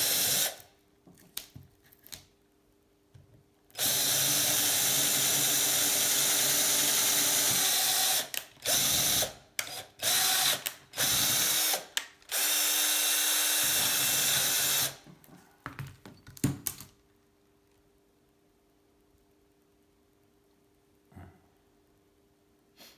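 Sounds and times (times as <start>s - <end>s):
electric drill boring: 0.0s - 0.6s, 3.8s - 15.0s.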